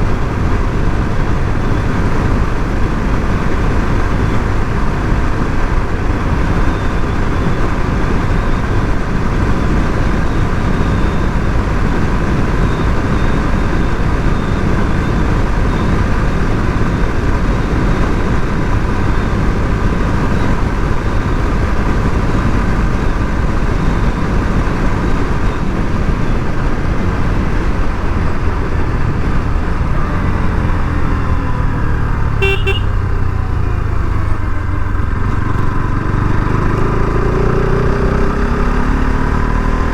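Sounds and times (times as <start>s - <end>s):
motorcycle engine running: 0.0s - 39.9s
wind and road noise: 0.0s - 39.9s
horn toot: 32.4s - 33.2s.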